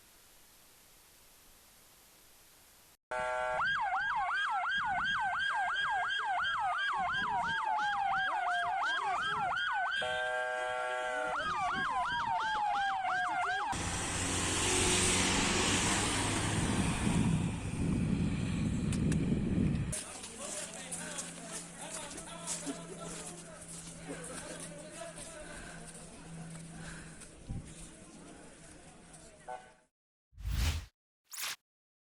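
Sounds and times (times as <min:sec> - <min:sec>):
steady horn-like tone: 0:03.1 - 0:03.7, 0:10.0 - 0:11.5
emergency sirens yelping and wailing: 0:03.2 - 0:18.0.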